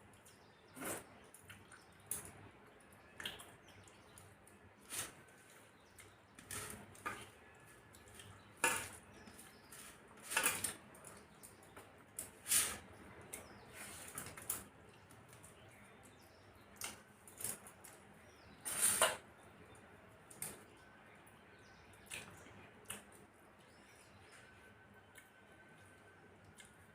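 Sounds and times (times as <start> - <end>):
chewing smacks and clicks: 1.2 - 4.3, 25.1 - 26.9.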